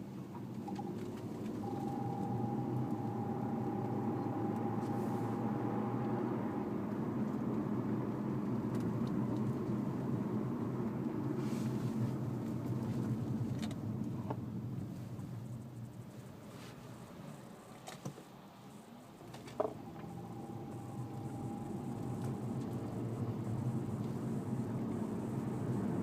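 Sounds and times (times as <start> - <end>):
thin steady whine: 0.0 - 8.8, 18.5 - 26.0
engine and road noise drone: 0.0 - 26.0.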